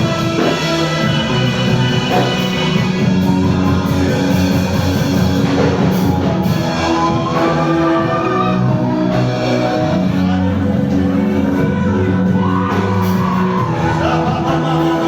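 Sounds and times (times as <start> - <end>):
drums: 0.0 - 15.0
guitar: 0.0 - 15.0
held keyboard chords: 0.0 - 15.0.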